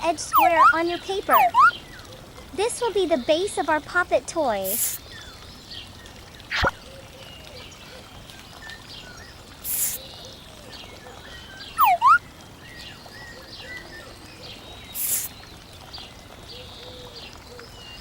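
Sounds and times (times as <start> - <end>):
birds chirping: 0.2 - 2.0, 11.3 - 12.2, 14.6 - 15.4
whistled bird call: 0.3 - 1.8, 11.4 - 12.2
hissing swishes: 4.7 - 5.0, 9.6 - 10.0, 15.0 - 15.3.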